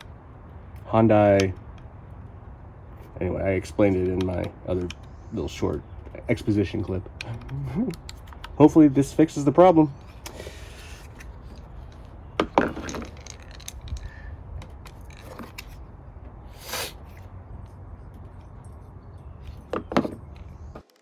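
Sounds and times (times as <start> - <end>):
small parts clicking: 6.8 - 8.6, 10.0 - 15.8.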